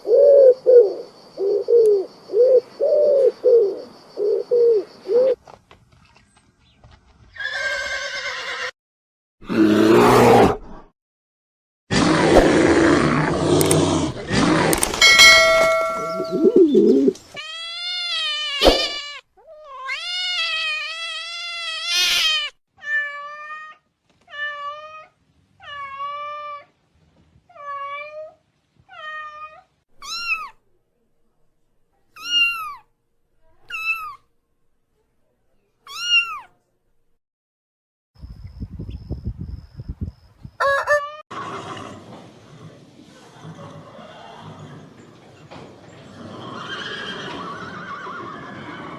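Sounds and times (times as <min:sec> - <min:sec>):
cat meowing: 0:17.4 - 0:26.6, 0:28.9 - 0:30.6, 0:32.2 - 0:32.8, 0:35.9 - 0:36.5.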